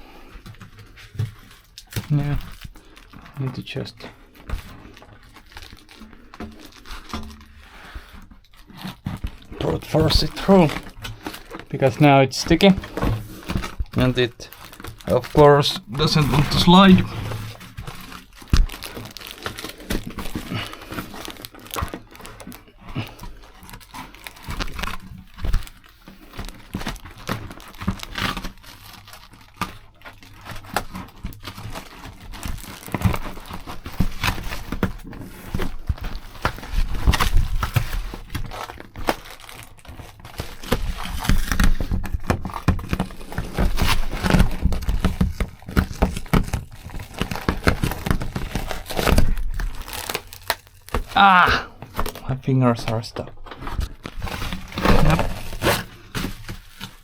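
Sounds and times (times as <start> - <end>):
insulation material crinkling: 0.0 - 57.0.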